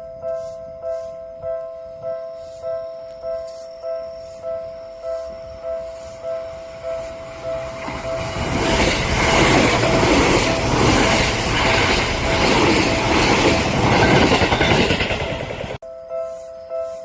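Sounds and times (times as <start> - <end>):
electric train passing: 4.7 - 15.8
wheels clattering over rail joints: 7.6 - 15.8.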